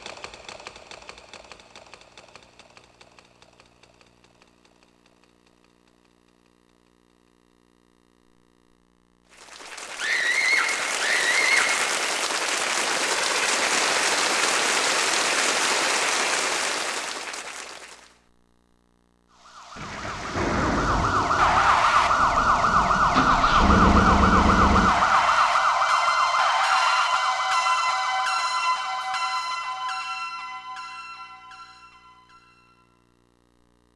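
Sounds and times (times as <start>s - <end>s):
low rumble: 19.4s - 26.5s
fast-warbling siren-like tone: 19.4s - 29.2s.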